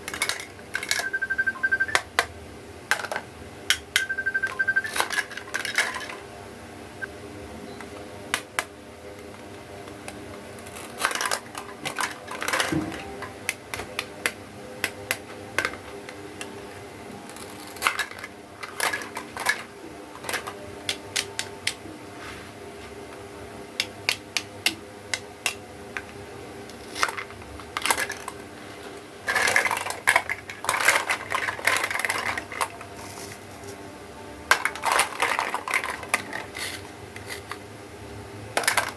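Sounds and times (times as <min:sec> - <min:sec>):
plastic toy pieces clicking: 0:10.6 - 0:12.7, 0:17.3 - 0:21.8, 0:29.3 - 0:33.4, 0:34.5 - 0:37.6, 0:38.6 - 0:38.9.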